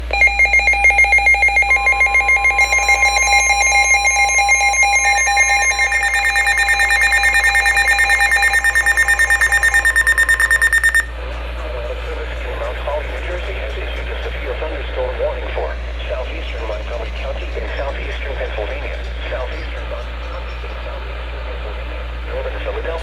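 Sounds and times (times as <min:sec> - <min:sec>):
rapid pulsing electronic alarm beeps: 0:00.0 - 0:11.1
steady warning alarm tone: 0:00.0 - 0:11.1.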